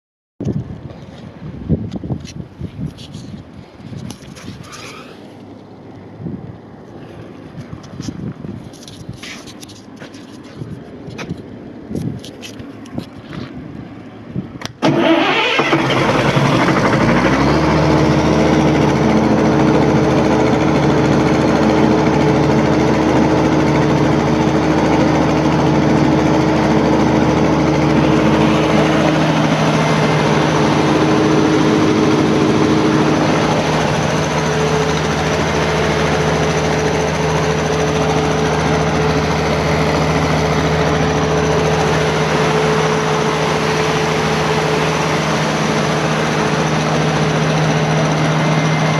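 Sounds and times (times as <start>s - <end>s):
diesel generator engine running: 2.8s - 48.9s.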